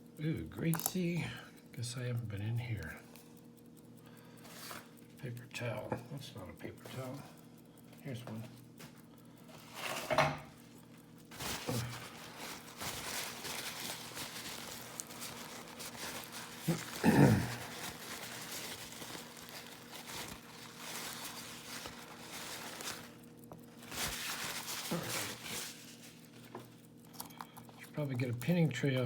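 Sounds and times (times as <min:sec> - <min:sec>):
paper towel crinkling and rubbing: 0:11.3 - 0:26.5.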